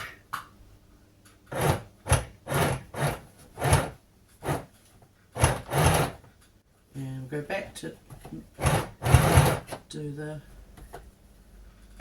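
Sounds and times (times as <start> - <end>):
sewing machine stitching: 1.5 - 4.7, 5.3 - 6.2, 8.5 - 9.8.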